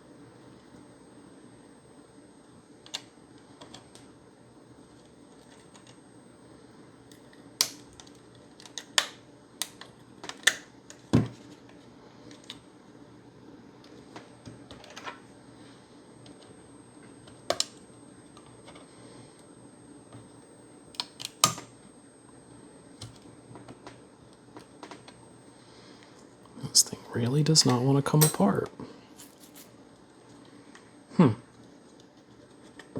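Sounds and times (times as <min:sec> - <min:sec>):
faint steady hum: 0:00.0 - 0:32.9.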